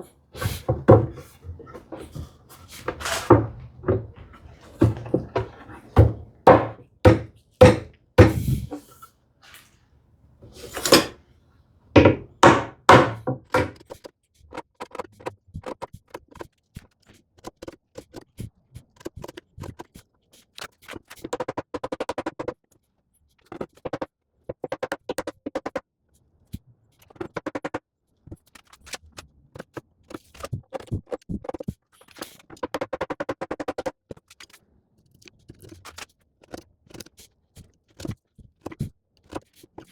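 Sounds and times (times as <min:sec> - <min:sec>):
hand tool strokes on wood: 0:00.0 - 0:09.7, 0:10.5 - 0:11.2
heavy wooden knocks: 0:00.4 - 0:08.8, 0:10.8 - 0:11.2, 0:12.0 - 0:13.8.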